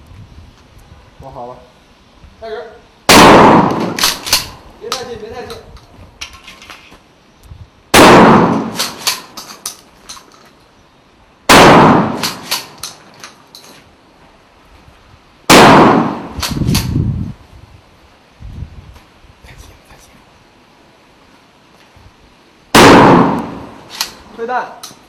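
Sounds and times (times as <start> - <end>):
shotgun shots: 3.1 - 5.0, 7.9 - 9.4, 11.5 - 12.8, 15.5 - 16.9, 22.7 - 24.2.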